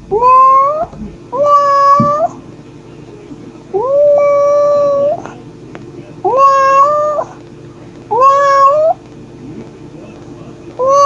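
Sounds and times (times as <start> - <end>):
cat meowing: 0.1 - 2.4, 3.8 - 5.2, 6.2 - 7.4, 8.1 - 9.0, 10.8 - 11.0.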